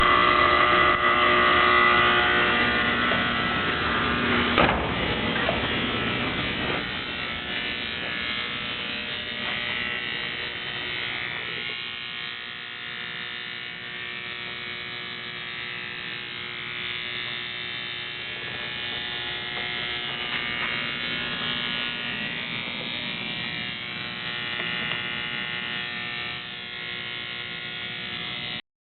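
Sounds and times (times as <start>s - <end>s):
vehicle buzz with held tones: 0.0s - 28.6s
single knock: 4.6s - 5.0s.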